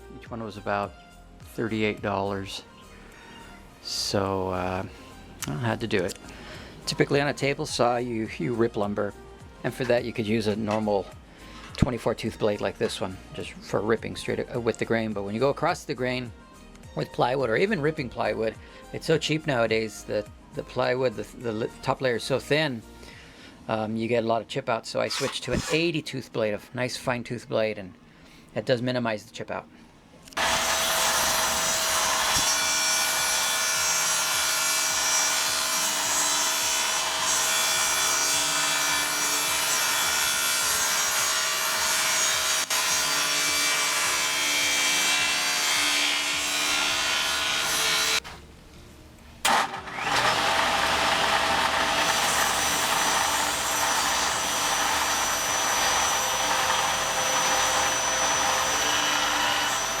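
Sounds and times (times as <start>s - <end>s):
table saw cutting plywood: 25.1s - 25.8s, 30.4s - 48.3s, 49.5s - 60.0s.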